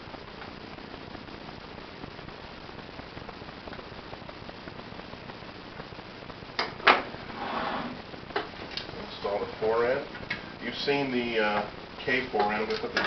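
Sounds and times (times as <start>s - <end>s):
faint steady hiss: 0.0s - 13.0s.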